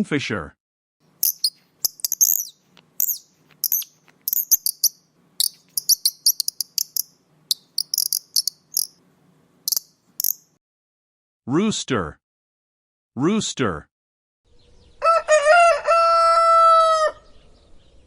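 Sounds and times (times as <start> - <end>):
kingfisher calling: 1.2 - 9.0, 9.7 - 10.4.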